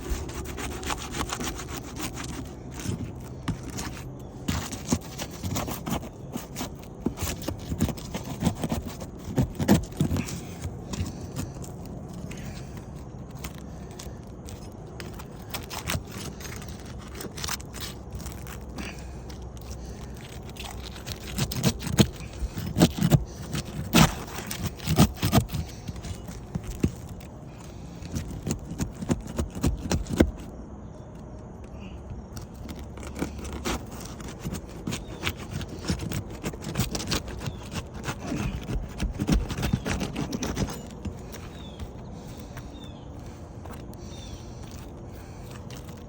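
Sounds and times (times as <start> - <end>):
shingles scraping and cracking: 0.0 - 46.0.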